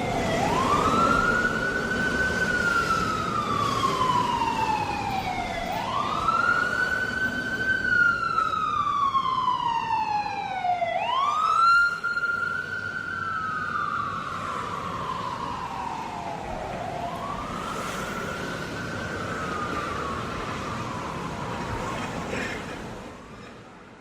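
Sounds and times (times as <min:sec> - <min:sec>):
ambulance siren wailing: 0:00.0 - 0:23.3.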